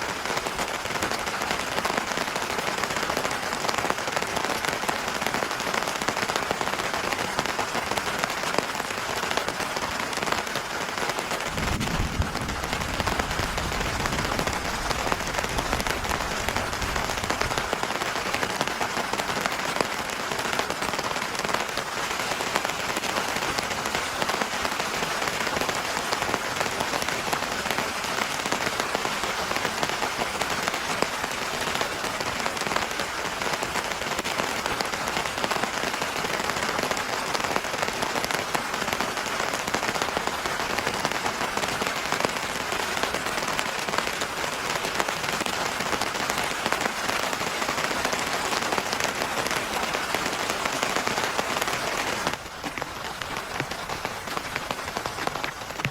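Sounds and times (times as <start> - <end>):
heavy rain falling: 0.0 - 55.9
low rumble: 11.5 - 14.3.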